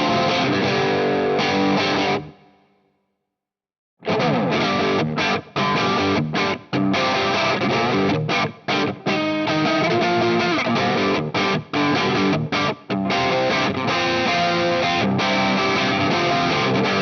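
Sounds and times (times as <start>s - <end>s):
distorted electric guitar riff: 0.0s - 2.5s, 4.0s - 17.0s.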